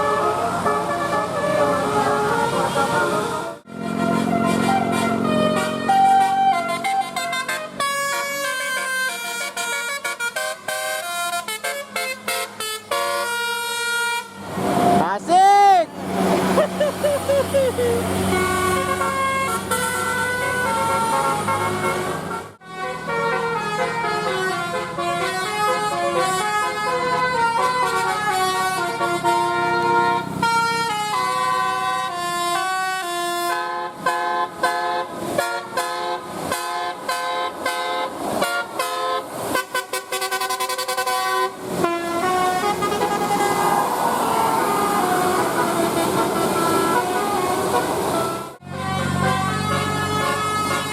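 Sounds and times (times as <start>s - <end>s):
multi-tone bus horns playing tunes: 0.0s - 15.5s, 16.7s - 50.9s
low engine hum: 15.9s - 22.3s.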